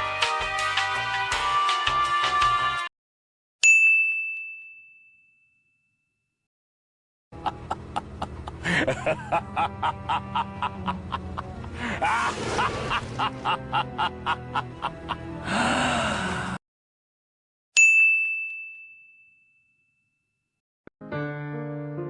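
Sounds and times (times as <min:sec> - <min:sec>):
bright ding: 0:03.6 - 0:06.0, 0:17.8 - 0:20.1.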